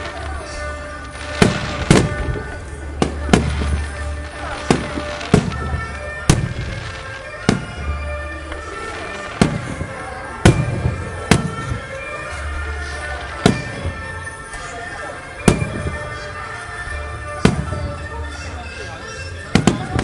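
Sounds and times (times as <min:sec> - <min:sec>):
fireworks booming: 0:00.0 - 0:20.0
music playing: 0:00.0 - 0:20.0.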